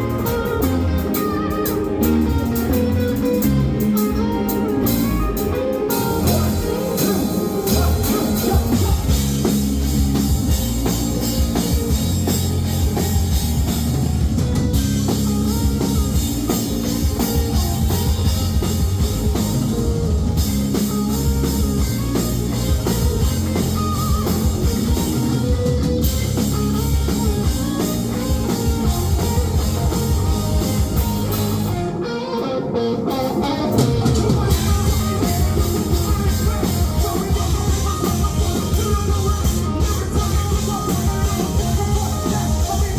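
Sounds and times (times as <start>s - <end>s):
bass guitar: 0.0s - 42.9s
drum kit: 0.0s - 42.9s
electric guitar: 0.0s - 42.9s.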